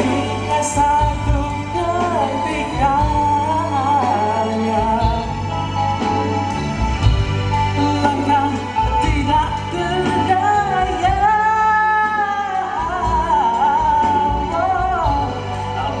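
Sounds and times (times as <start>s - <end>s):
band accompaniment: 0.0s - 16.0s
wavering lead melody: 0.0s - 16.0s.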